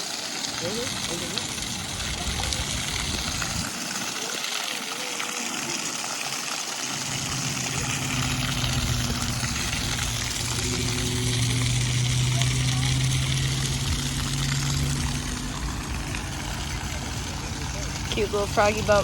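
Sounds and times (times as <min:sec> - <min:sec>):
fountain water splashing: 0:00.0 - 0:19.0
steady low hum: 0:06.9 - 0:19.0.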